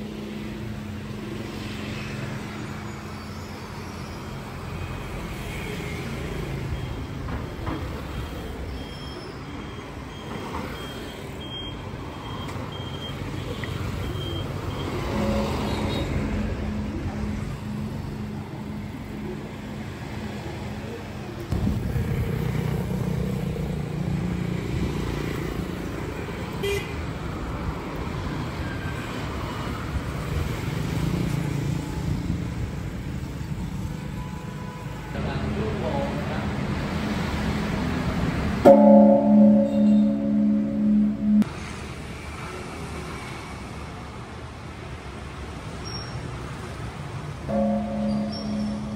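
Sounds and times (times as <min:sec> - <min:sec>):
vehicle engines passing: 0:09.4 - 0:34.0, 0:35.0 - 0:48.9.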